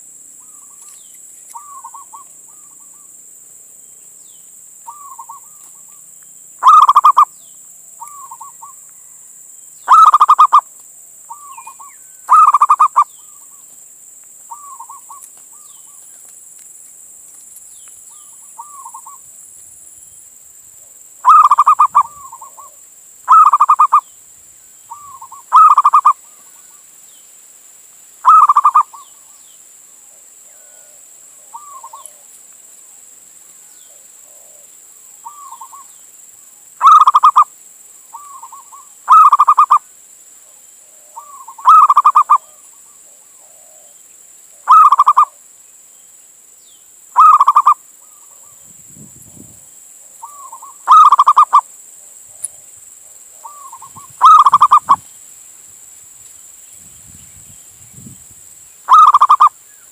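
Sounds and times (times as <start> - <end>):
dove trilled cooing: 0.4 - 3.1, 4.9 - 6.0, 6.6 - 7.4, 8.0 - 8.8, 9.9 - 10.7, 11.3 - 13.6, 14.5 - 16.0, 18.1 - 19.3, 21.2 - 24.1, 24.9 - 26.8, 28.2 - 29.3, 30.0 - 32.3, 33.9 - 35.9, 36.8 - 37.5, 38.1 - 39.8, 40.4 - 45.4, 47.2 - 48.6, 50.1 - 51.7, 52.3 - 55.0, 58.9 - 59.9.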